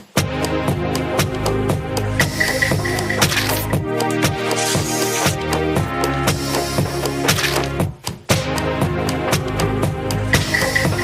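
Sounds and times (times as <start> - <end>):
upbeat electronic music: 0.0 - 11.0
kick drum: 7.8 - 8.5.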